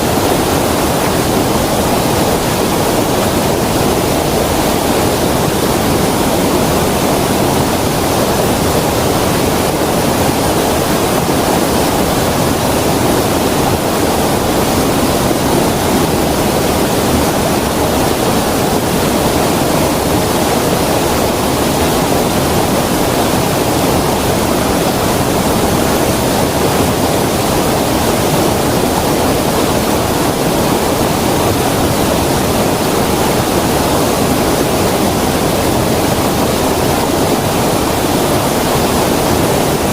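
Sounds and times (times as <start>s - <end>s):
creek water flowing: 0.0s - 39.9s.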